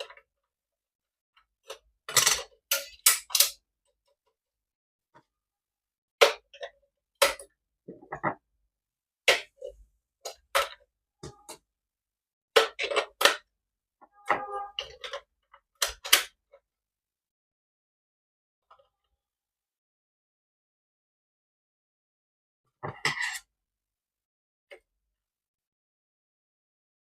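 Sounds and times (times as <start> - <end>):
plastic toy parts clicking: 1.6 - 3.6.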